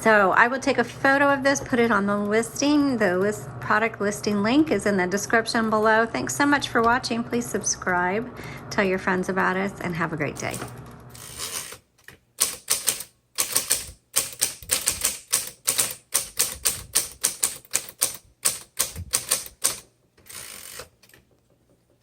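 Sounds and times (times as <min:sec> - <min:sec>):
low steady hum: 0:00.0 - 0:11.8
electric typewriter key strikes: 0:10.4 - 0:11.8, 0:12.4 - 0:21.1.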